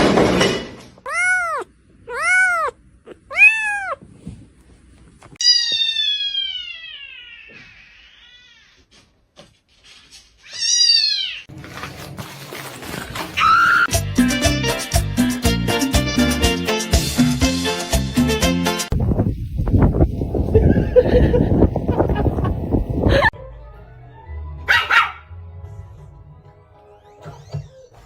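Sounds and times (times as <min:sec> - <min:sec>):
cat meowing: 0:01.0 - 0:04.0, 0:05.4 - 0:08.9, 0:10.4 - 0:11.5.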